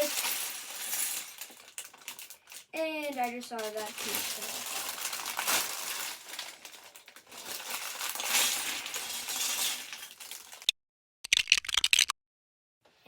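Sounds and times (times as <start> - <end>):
plastic bricks clattering: 0.0 - 10.7.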